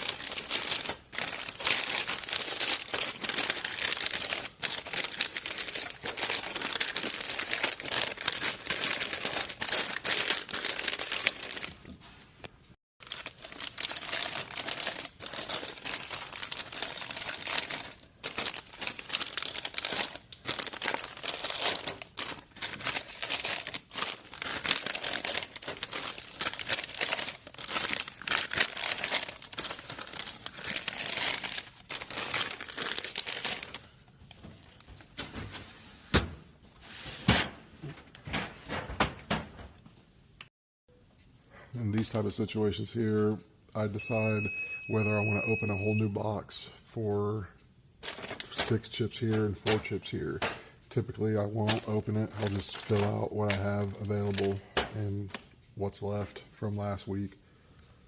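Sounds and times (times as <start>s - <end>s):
plastic bags crinkling: 0.0s - 12.2s, 13.0s - 35.1s, 48.0s - 49.8s, 51.6s - 55.5s.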